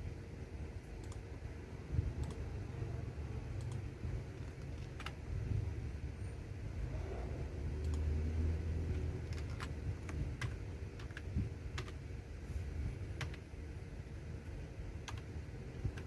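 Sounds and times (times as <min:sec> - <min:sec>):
low background rumble: 0:00.0 - 0:16.0
keyboard keystrokes clicking: 0:03.6 - 0:05.2, 0:08.9 - 0:12.0, 0:13.2 - 0:13.4, 0:15.0 - 0:16.0.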